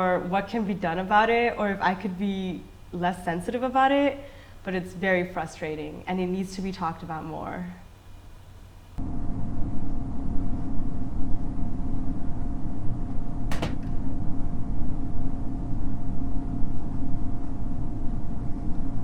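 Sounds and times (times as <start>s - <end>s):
faint constant hum: 0.0s - 19.0s
low rumble: 9.0s - 19.0s.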